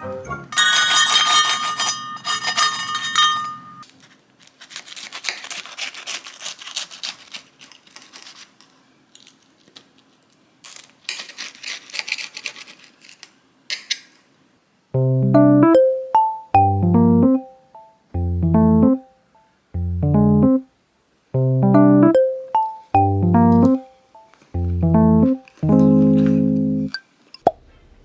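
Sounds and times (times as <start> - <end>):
music: 0.0 - 0.6, 15.0 - 19.2, 19.8 - 20.7, 21.4 - 27.0
clattering and rustling handling noise: 0.5 - 14.4, 25.3 - 27.3.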